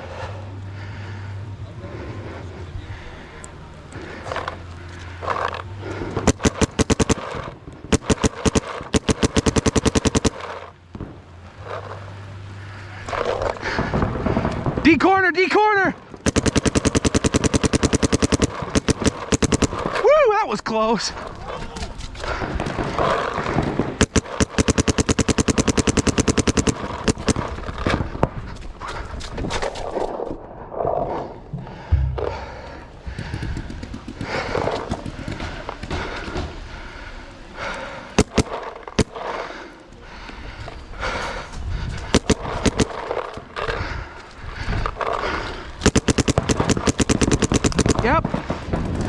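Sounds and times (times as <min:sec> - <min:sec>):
paintball marker firing rapidly: 0:05.2 - 0:10.8, 0:16.2 - 0:20.1, 0:22.3 - 0:28.2, 0:31.7 - 0:40.2, 0:41.0 - 0:44.0, 0:45.0 - 0:48.7.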